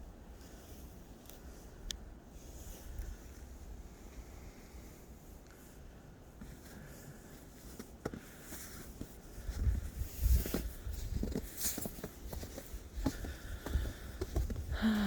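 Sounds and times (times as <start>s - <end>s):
footsteps crunching in snow: 6.4s - 15.0s
wind rumbling on microphone: 8.9s - 15.0s.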